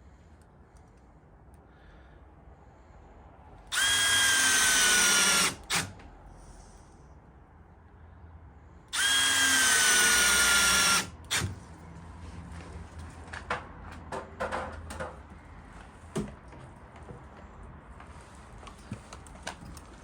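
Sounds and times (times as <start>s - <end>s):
handheld power tool running: 3.7s - 5.9s, 9.0s - 11.5s.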